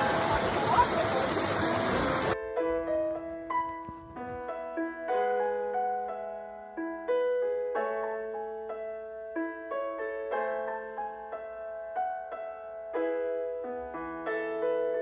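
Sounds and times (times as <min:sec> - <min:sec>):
slow gentle piano melody: 0:00.0 - 0:15.0.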